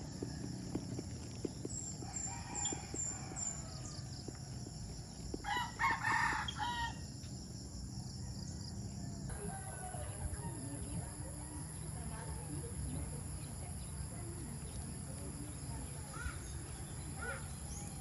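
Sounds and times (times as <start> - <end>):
high insect hum: 0.0 - 18.0
rooster crowing: 2.0 - 4.3, 5.4 - 7.1, 8.2 - 10.8.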